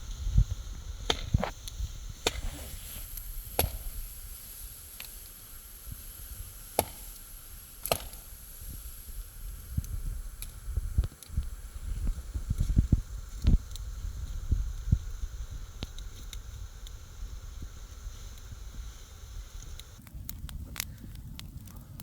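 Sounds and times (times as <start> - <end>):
wind rumble on microphone: 0.0 - 22.0
wood being chopped: 1.1 - 1.6, 2.2 - 2.6, 3.5 - 4.0, 6.7 - 7.2, 7.8 - 8.3.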